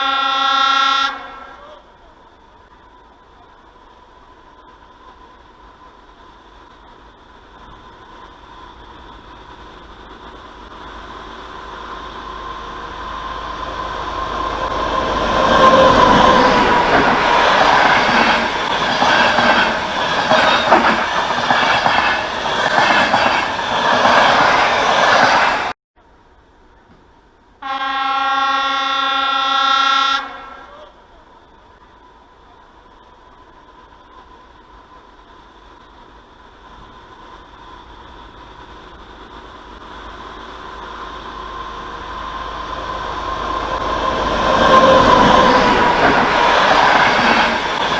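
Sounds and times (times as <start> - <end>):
train horn blast: 0.0 - 1.8, 27.6 - 31.0
train wheels clattering: 15.4 - 25.7.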